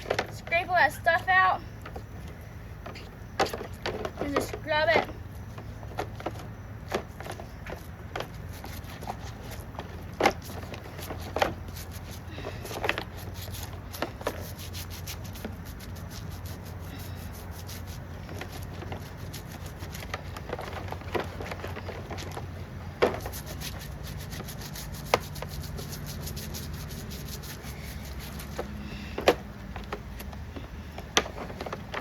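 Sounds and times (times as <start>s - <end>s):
stiff brush scrubbing: 7.2s - 29.2s.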